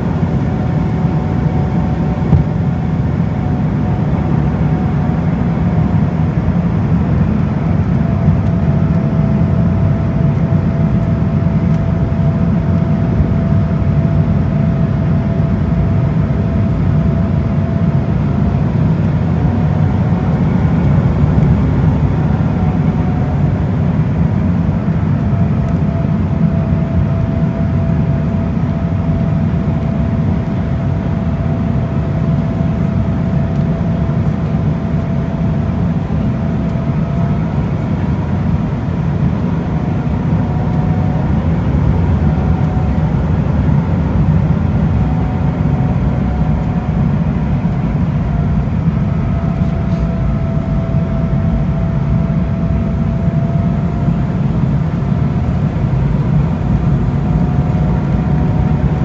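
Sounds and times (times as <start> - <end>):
airliner cabin engine rumble: 0.0 - 59.0
faint hum: 26.6 - 59.0.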